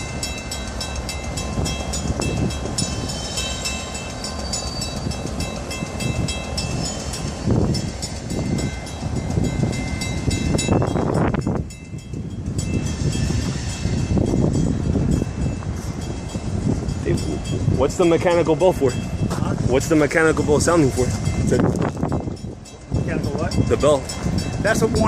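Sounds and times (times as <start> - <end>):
mechanical warning bell ringing: 0.0 - 19.2.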